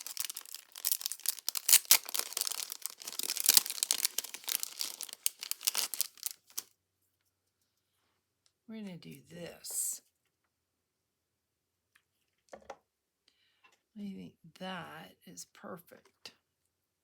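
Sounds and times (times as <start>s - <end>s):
paper crinkling and rustling: 0.0s - 6.7s.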